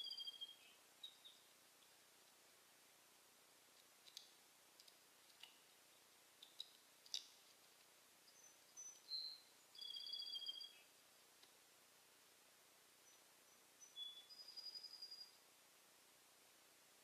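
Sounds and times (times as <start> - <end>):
songbird two-toned whistle: 0.0 - 0.6, 9.1 - 10.8, 13.8 - 15.4
songbird chip notes: 0.0 - 1.6, 8.2 - 11.0, 13.0 - 15.4.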